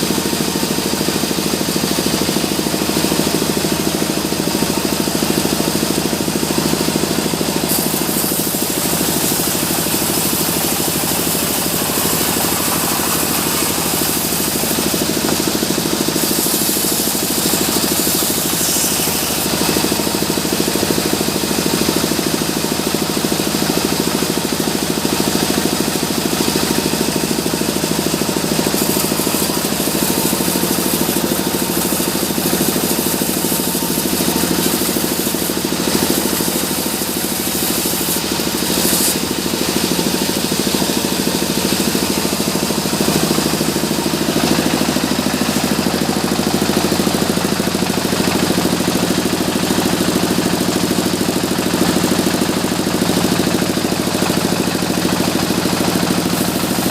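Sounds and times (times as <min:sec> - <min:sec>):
band saw machinery droning: 0:00.0 - 0:56.9
bright hiss: 0:07.6 - 0:20.2.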